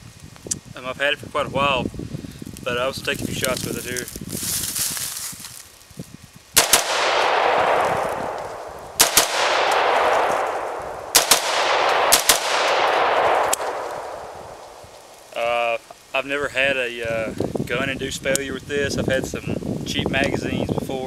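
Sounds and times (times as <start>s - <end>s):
rifle shots with echo: 6.6s - 15.3s.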